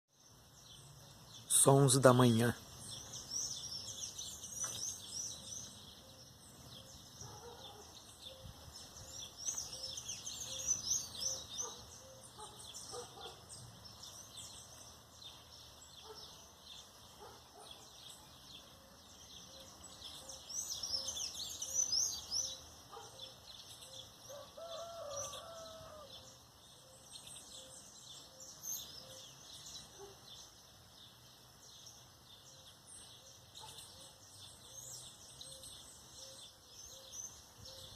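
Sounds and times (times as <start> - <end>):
small birds chirping: 0.1 - 37.9
rooster crowing: 24.3 - 26.2.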